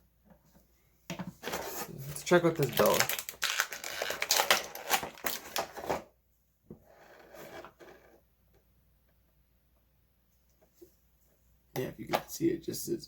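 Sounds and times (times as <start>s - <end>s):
plastic toy handling clicks and rustles: 2.4s - 6.1s.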